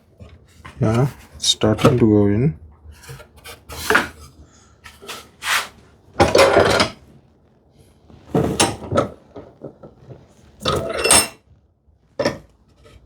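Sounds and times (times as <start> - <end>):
plywood scraping against wood: 0.0 - 2.1, 2.9 - 7.0.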